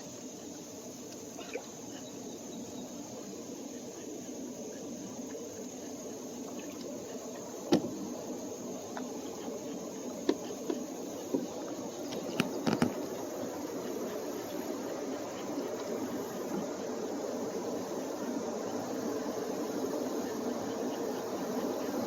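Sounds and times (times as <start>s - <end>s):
insects buzzing: 0.0s - 22.0s
moving river water: 0.0s - 22.0s
knocks against canoe: 7.7s - 8.0s, 10.2s - 13.0s.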